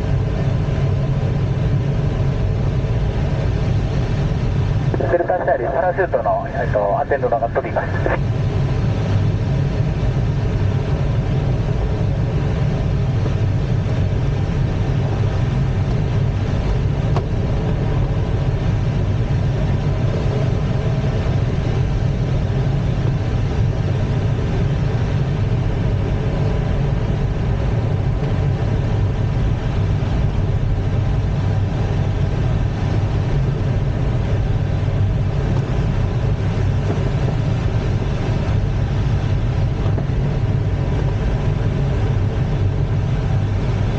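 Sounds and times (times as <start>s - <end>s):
constant low hum: 0.0s - 43.9s.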